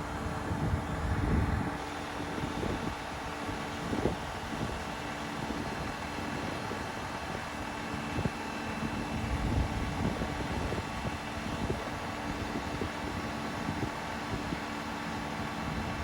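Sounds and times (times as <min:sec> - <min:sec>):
heavy machinery engine running: 0:00.0 - 0:16.0.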